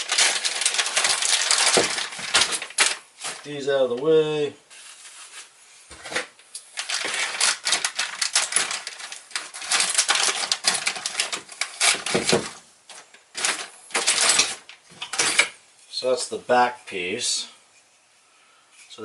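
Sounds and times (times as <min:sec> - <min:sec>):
parts clicking and rattling: 0:00.0 - 0:03.4, 0:06.6 - 0:15.6.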